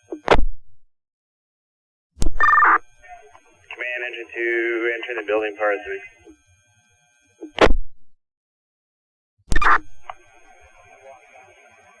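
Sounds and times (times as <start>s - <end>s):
radio static bursts: 2.3s - 6.3s, 9.5s - 12.0s
faint radio hiss: 3.0s - 6.3s, 10.1s - 12.0s.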